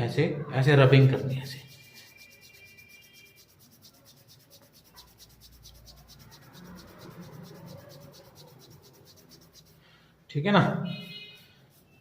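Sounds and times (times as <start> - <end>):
fingertips rubbing skin: 0.9 - 9.9.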